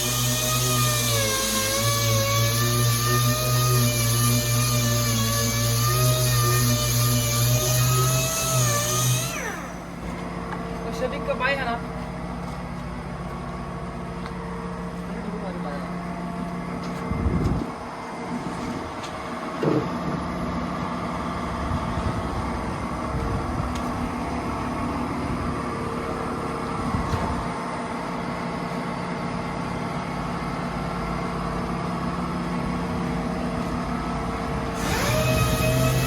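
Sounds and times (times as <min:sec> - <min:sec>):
motor spinning up whine: 0:00.0 - 0:10.5, 0:33.9 - 0:36.0
steady machine hum: 0:00.0 - 0:36.0.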